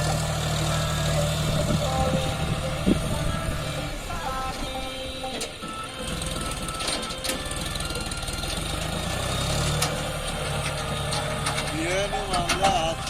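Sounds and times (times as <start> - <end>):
diesel tractor engine knocking: 0.0 - 13.0.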